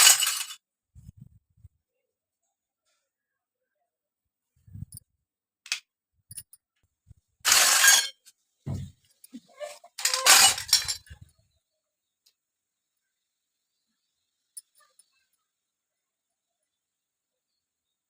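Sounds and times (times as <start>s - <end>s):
toy pieces rattling clatter: 0.0s - 0.6s, 7.5s - 8.2s, 9.8s - 11.2s.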